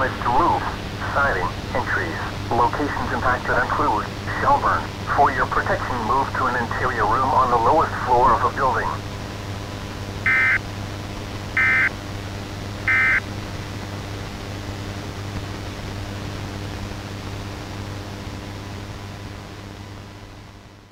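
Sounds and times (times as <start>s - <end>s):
radio static with low hum: 0.0s - 20.9s
screeching data bursts: 10.3s - 10.6s.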